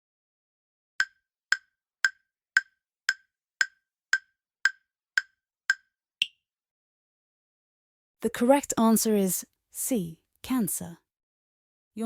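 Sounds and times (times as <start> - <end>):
countdown timer ticks: 1.0 - 6.4.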